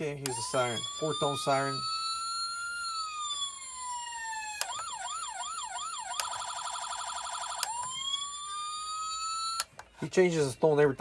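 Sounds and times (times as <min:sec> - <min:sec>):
toy electronic siren: 0:00.2 - 0:09.7.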